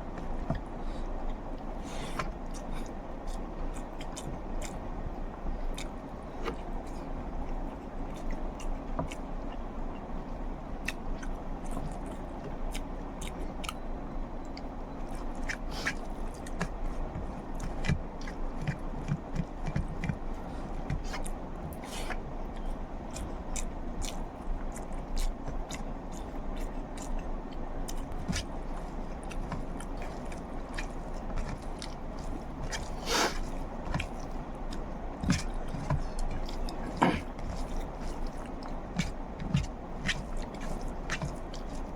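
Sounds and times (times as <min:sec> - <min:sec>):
chewing with wet mouth clicks: 0:00.0 - 0:41.9.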